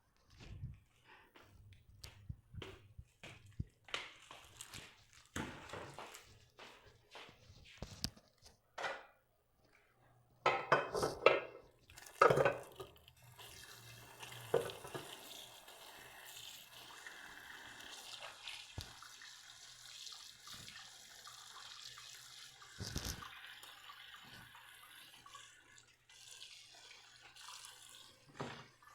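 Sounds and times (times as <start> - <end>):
dishes clattering in a sink: 8.8 - 9.2, 10.4 - 13.0, 14.3 - 15.4, 28.2 - 28.9
kitchen tap running: 10.4 - 28.9.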